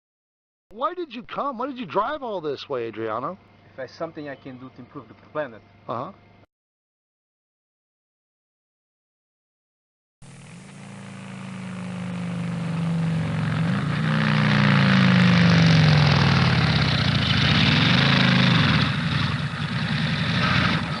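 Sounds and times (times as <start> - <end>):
vehicle engine running: 10.2 - 21.0.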